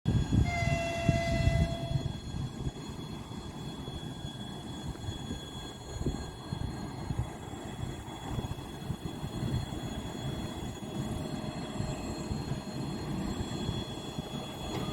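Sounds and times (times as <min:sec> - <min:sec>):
freight train rumbling on rails: 0:00.0 - 0:14.9
locomotive horn: 0:00.4 - 0:02.1.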